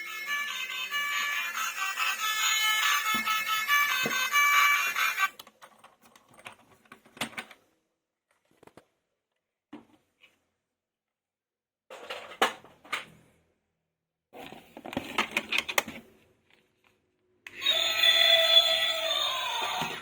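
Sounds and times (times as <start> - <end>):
music: 0.0 - 5.3
plastic toys and packaging rustling: 2.9 - 10.4, 14.4 - 17.1.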